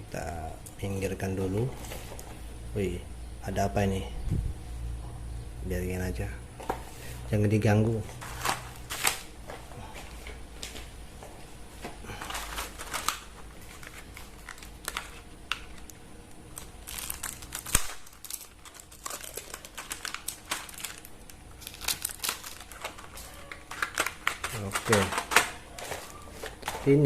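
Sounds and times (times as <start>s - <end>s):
packaging crinkling: 8.1s - 9.4s, 12.1s - 27.0s
small items clicking: 21.6s - 27.0s.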